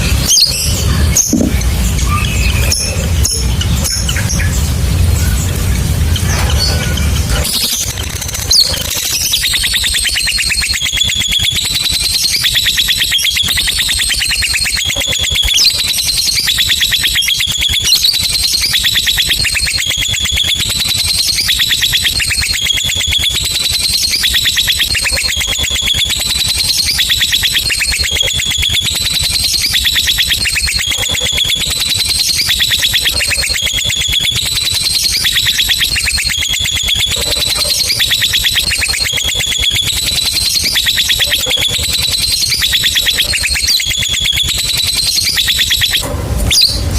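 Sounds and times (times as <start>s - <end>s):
lovebird chattering trill: 0.0s - 46.9s.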